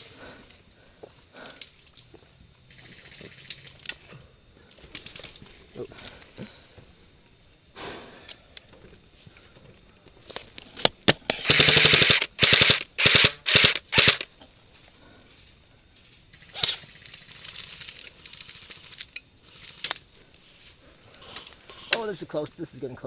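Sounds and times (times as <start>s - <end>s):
airsoft gun firing bursts: 11.4s - 14.3s.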